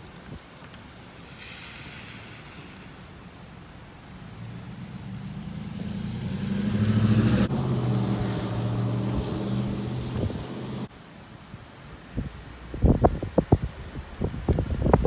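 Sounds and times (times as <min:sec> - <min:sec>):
car engine running: 0:04.2 - 0:10.9.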